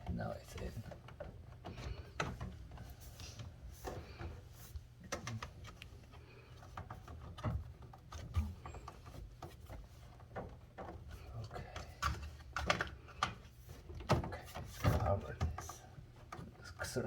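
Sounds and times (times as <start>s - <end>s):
plastic parts clicking and knocking: 0.0s - 2.8s, 6.6s - 16.5s.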